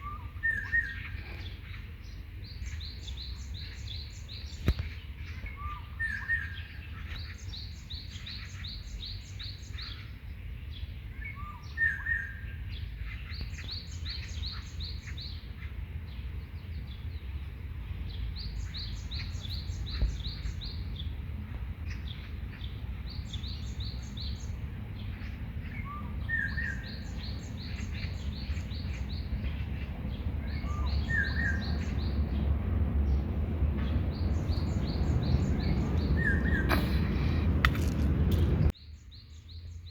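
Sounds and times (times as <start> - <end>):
songbirds singing: 0.0 - 39.9
low steady rumble: 24.6 - 38.8.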